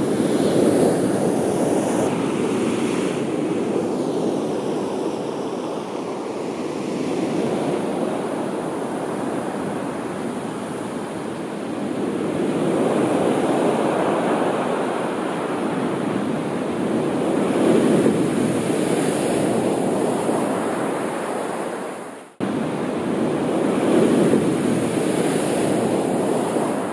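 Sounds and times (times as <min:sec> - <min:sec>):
sea waves breaking on shore: 0:00.0 - 0:26.9.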